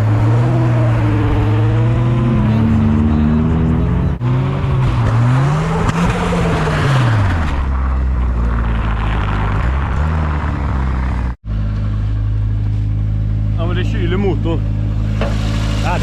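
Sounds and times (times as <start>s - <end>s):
car engine revving: 0.0s - 12.8s.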